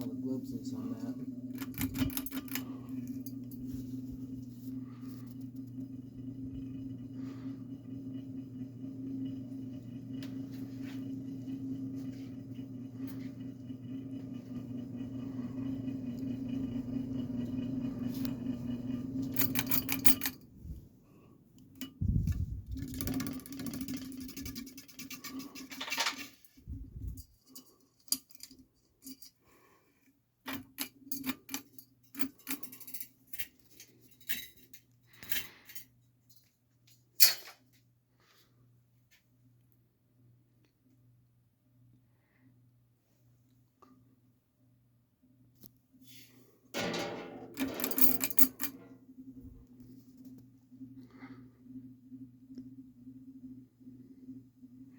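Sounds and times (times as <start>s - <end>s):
ceiling fan motor humming: 0.0s - 28.6s.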